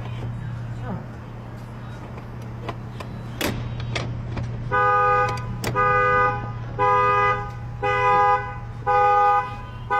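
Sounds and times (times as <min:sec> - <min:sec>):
car alarm horn blasts: 0:04.6 - 0:09.9.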